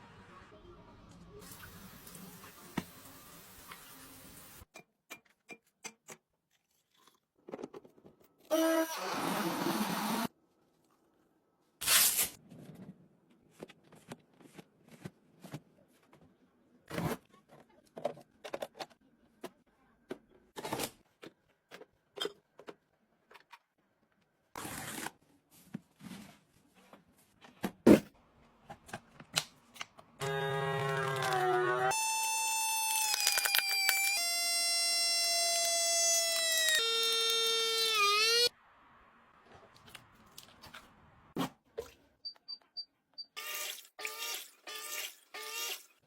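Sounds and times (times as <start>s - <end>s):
handling small items and packaging: 32.8s - 37.6s
packaging crinkling: 33.1s - 34.2s.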